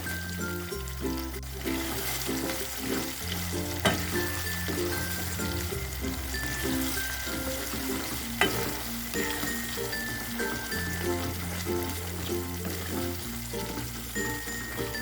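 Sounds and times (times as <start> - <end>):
background music: 0.0 - 15.0
chili paste sizzling in a pan: 0.0 - 15.0.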